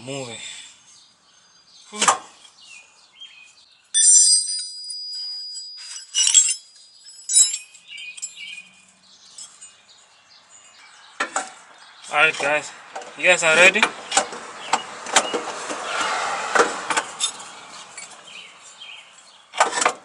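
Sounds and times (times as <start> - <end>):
metallic clanks and scrapes: 16.5 - 18.8.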